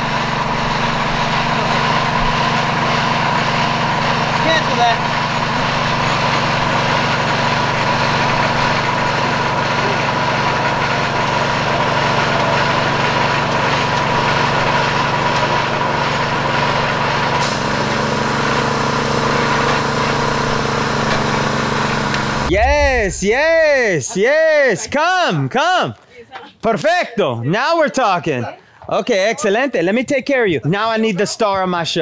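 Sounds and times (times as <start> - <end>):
engine idling: 0.0 - 23.7.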